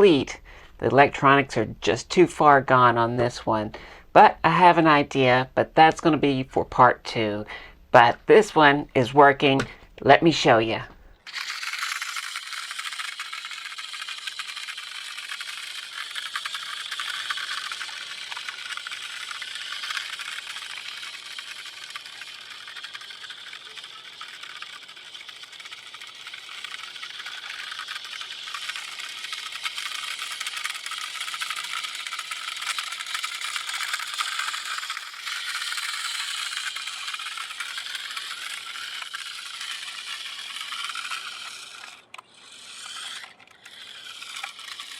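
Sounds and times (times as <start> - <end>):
toy truck electric motor whirring: 0.0 - 7.7, 8.3 - 44.9
plastic rattle: 10.8 - 44.9.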